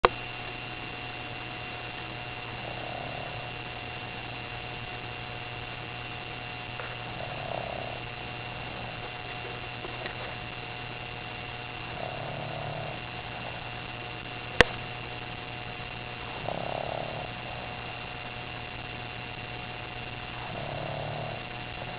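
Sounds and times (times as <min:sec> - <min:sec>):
steady electrical hum: 0:00.0 - 0:21.9
puppy snoring softly: 0:02.1 - 0:04.8, 0:06.5 - 0:10.5, 0:11.8 - 0:14.0, 0:16.2 - 0:18.4, 0:20.3 - 0:21.9.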